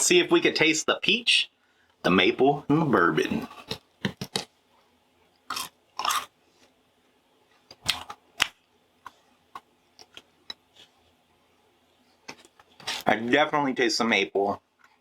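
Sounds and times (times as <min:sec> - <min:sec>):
person chewing food: 0:05.4 - 0:06.4.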